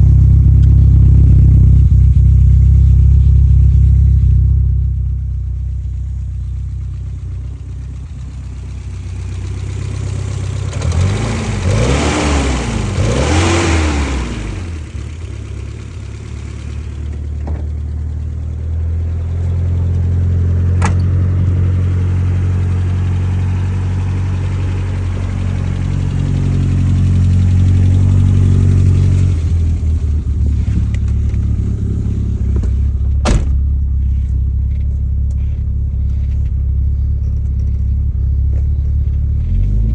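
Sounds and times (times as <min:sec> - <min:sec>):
four-cylinder car engine revving: 0:05.7 - 0:33.6, 0:38.4 - 0:39.9.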